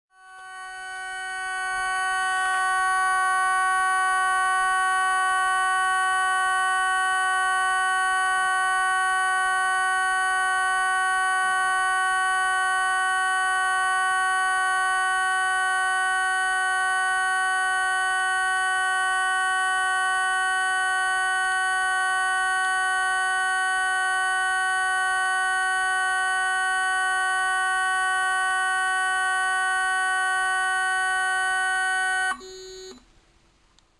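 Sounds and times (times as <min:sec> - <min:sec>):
steady electronic tone: 0:00.1 - 0:07.1.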